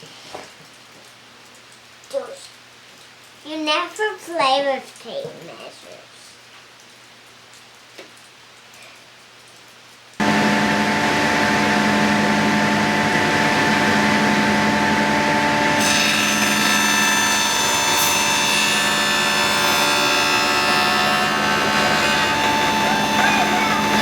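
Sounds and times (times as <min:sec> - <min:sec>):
higher whine: 0:10.2 - 0:24.0
power saw running: 0:10.2 - 0:24.0.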